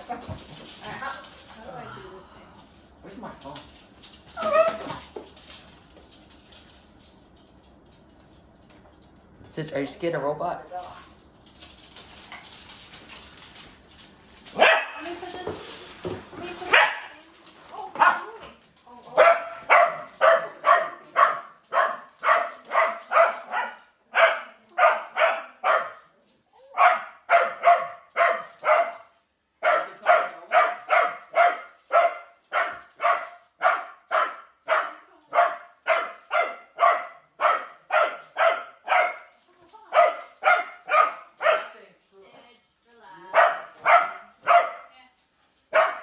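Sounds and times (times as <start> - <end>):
dog barking rapidly: 14.6 - 15.0, 26.8 - 29.0, 29.6 - 39.3, 40.0 - 41.7, 43.4 - 44.8, 45.8 - 46.0.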